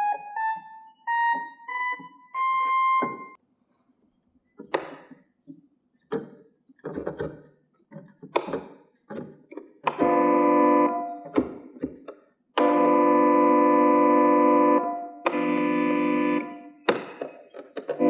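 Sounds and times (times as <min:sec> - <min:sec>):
keys and switches clicking: 0:08.4 - 0:09.2, 0:09.8 - 0:10.2, 0:11.1 - 0:12.9, 0:14.8 - 0:15.8, 0:16.4 - 0:18.0
electronic organ chords: 0:09.9 - 0:11.6, 0:12.6 - 0:17.2.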